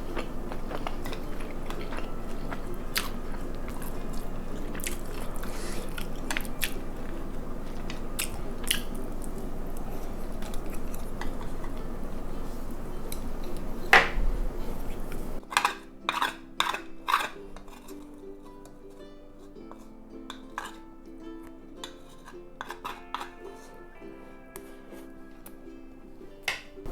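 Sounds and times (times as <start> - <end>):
steady background hiss: 0.0 - 16.5, 23.4 - 26.9
light music: 0.0 - 26.9
utensils clinking against dishes: 0.0 - 26.9.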